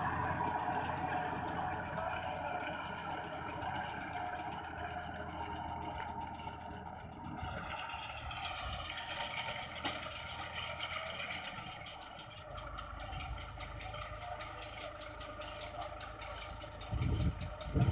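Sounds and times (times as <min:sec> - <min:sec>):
tractor engine running: 0:00.0 - 0:17.9
machine rattling: 0:07.7 - 0:17.9.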